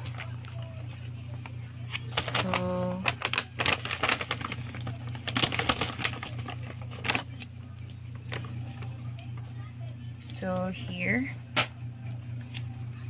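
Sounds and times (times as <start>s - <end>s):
steady low hum: 0.0s - 13.0s
packaging crinkling and clicking: 1.4s - 9.0s.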